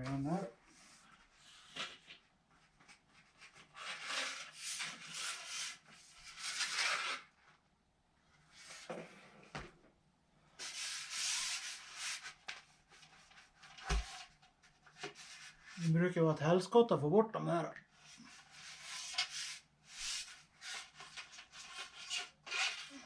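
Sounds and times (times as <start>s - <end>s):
fishing pole sections scraping: 18.3s - 23.0s.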